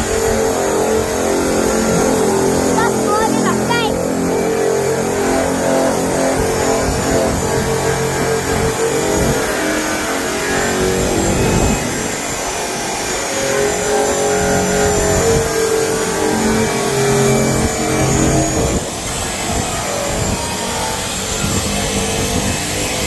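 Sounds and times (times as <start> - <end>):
electric drum sander motor whine: 0.0 - 23.0.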